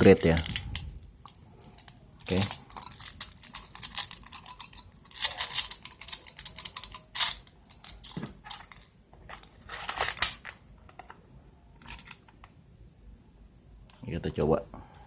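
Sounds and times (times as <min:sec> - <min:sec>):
plastic pellets clicking and rattling: 0:00.0 - 0:09.0.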